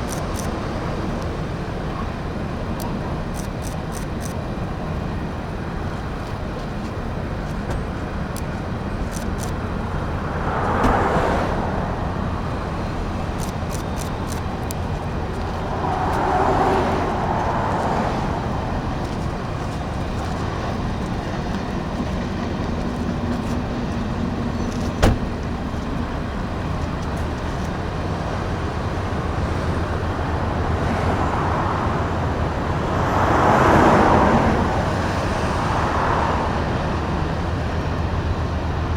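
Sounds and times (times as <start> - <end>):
car road and tyre noise: 0.0 - 38.9
vehicles passing: 0.0 - 38.9
sharp click: 13.4 - 14.8.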